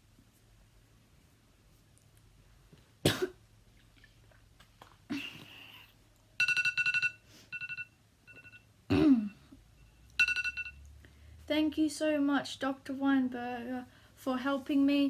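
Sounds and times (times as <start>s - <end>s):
person coughing: 3.0s - 3.4s, 8.9s - 9.4s.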